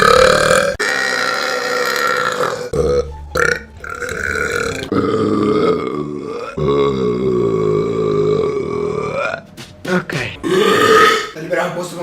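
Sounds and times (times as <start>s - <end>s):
long loud burps: 0.0s - 9.4s, 10.4s - 11.4s.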